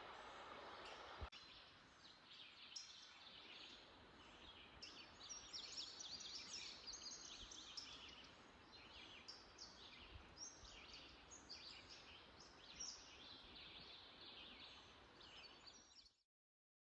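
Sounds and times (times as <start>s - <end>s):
soft outdoor hiss: 0.0s - 16.1s
songbirds singing and chirping: 0.4s - 16.2s.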